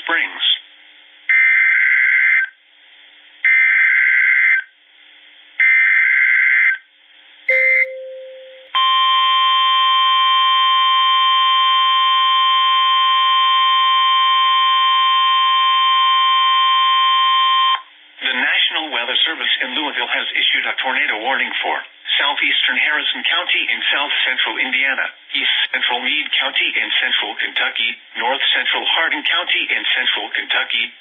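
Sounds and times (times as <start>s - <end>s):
long steady attention tone: 7.5s - 17.8s.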